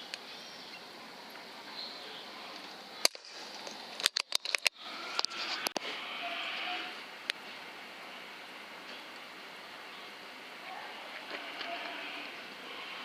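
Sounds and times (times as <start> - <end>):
faint steady hiss: 0.0 - 13.0
metallic clicks of rifle action: 3.0 - 5.8.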